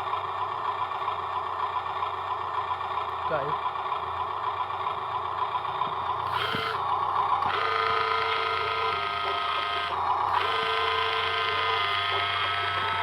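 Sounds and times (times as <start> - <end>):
electric motors whining: 5.8 - 13.0.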